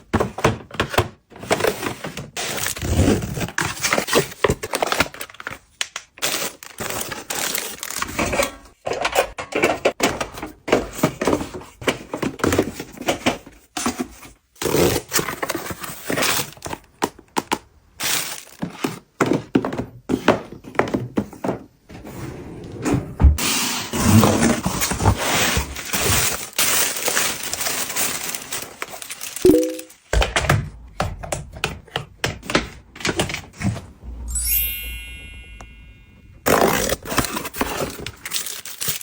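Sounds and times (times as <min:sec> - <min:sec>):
wrapping crinkling: 0:24.9 - 0:30.1, 0:36.5 - 0:39.0.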